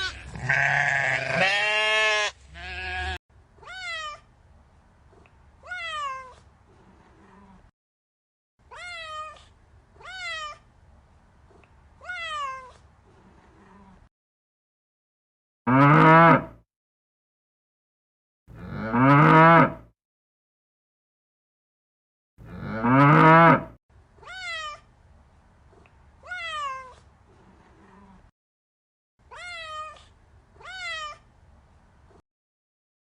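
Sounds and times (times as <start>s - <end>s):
goat or sheep bleat: 0.0s - 3.2s
cat meowing: 2.6s - 4.3s, 5.6s - 6.4s, 8.7s - 10.6s, 12.0s - 12.8s, 24.2s - 24.9s, 26.2s - 27.1s, 29.3s - 31.2s.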